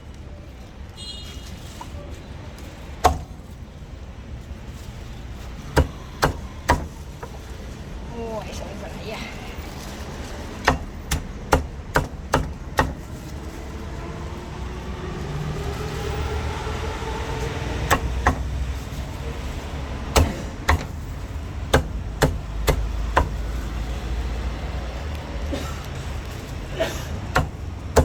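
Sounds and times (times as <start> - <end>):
cleaver chopping meat on block: 3.0 - 3.6, 5.7 - 7.4, 10.6 - 13.2, 17.8 - 18.6, 20.1 - 23.6, 27.3 - 28.0
passing vehicle engine drone: 13.3 - 17.9.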